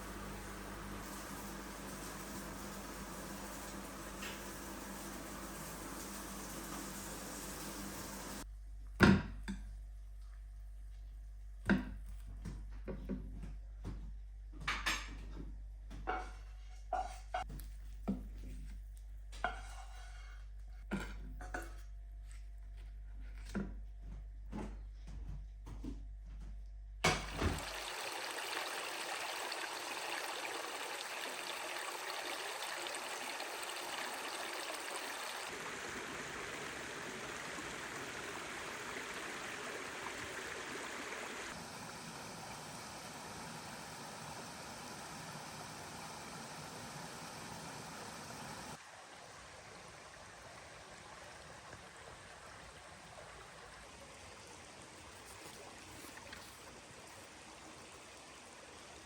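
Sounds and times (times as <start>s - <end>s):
water running and splashing: 0.0s - 8.5s, 27.1s - 59.0s.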